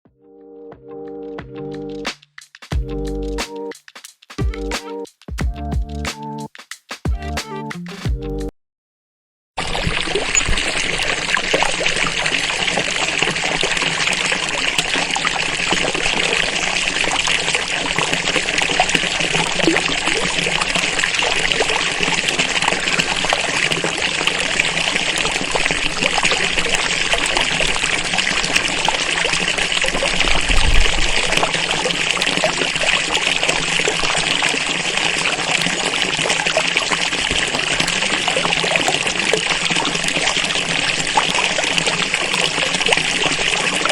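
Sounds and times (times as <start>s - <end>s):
water trickling and splashing: 9.6s - 43.9s.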